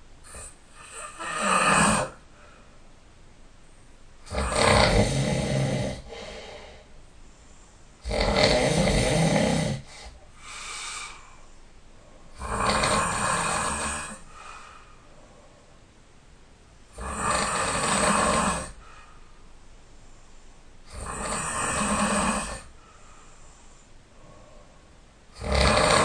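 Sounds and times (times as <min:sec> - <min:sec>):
soft breath sound: 0:00.0 - 0:04.1, 0:05.9 - 0:08.0, 0:09.5 - 0:16.9, 0:18.0 - 0:20.9, 0:21.8 - 0:25.4
person snoring loudly: 0:00.2 - 0:02.2, 0:04.2 - 0:06.5, 0:08.0 - 0:10.1, 0:12.3 - 0:14.3, 0:16.9 - 0:18.8, 0:20.9 - 0:22.7, 0:25.3 - 0:26.0.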